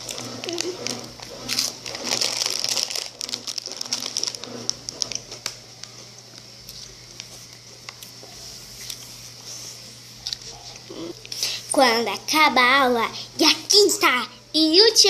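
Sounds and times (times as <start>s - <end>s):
snack packaging crackling: 0.0s - 8.2s.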